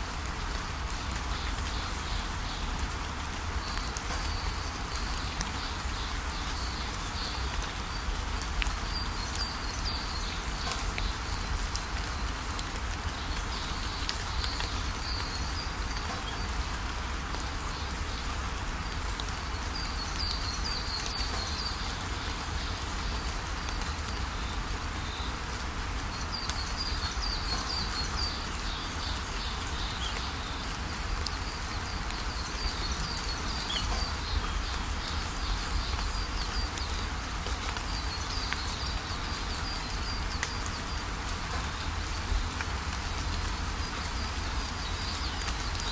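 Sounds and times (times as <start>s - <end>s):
steady rain: 0.0s - 45.9s.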